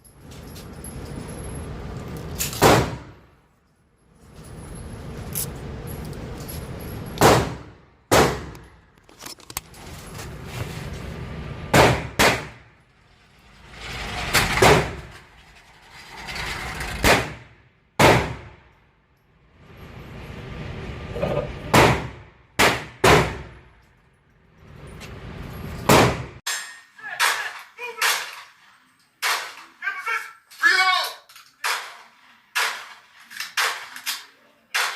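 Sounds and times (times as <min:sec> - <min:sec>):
loud sharp bangs: 0:02.5 - 0:03.2, 0:07.2 - 0:08.7, 0:11.7 - 0:12.7, 0:14.4 - 0:15.2, 0:17.0 - 0:18.7, 0:21.6 - 0:23.7, 0:25.9 - 0:28.3.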